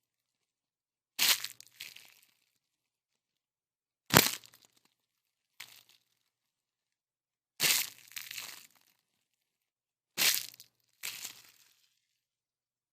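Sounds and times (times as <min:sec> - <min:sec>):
plastic crushing crunches: 0:04.1 - 0:04.6.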